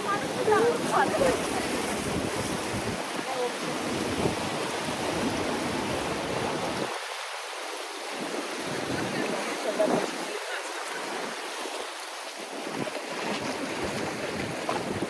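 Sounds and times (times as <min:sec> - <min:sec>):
faint voices: 0:00.0 - 0:02.2
river water rushing: 0:00.0 - 0:15.0.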